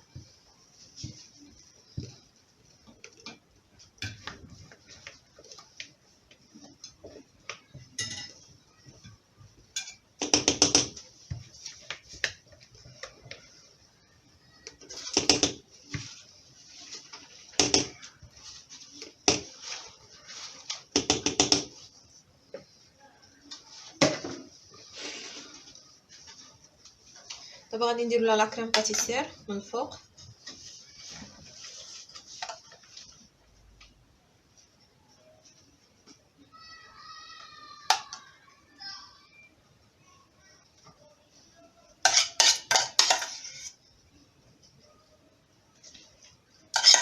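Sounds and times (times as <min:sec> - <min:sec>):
utensils scraping a mixing bowl: 0:42.0 - 0:43.8, 0:46.7 - 0:47.0.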